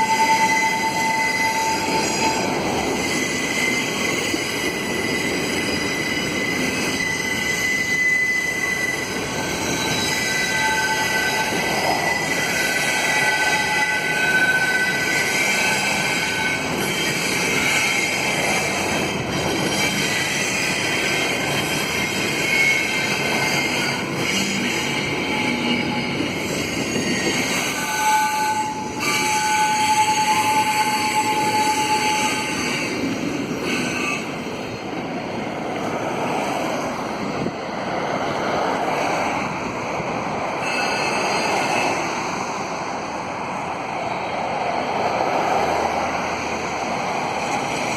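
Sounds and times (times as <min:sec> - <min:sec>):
high wheel squeals: 0:00.0 - 0:35.0, 0:40.5 - 0:42.7
train wheels rumbling on rails: 0:00.0 - 0:47.9.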